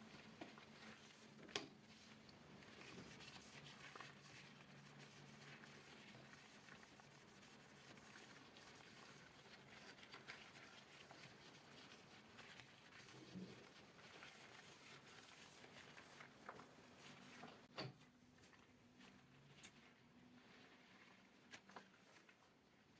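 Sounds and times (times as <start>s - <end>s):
cloth wiping a surface: 0.0s - 17.7s.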